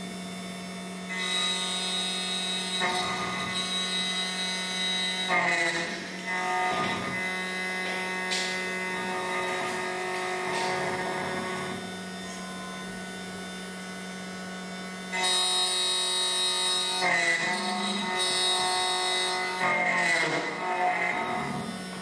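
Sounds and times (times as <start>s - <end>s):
key cutting machine humming: 0.0s - 17.0s.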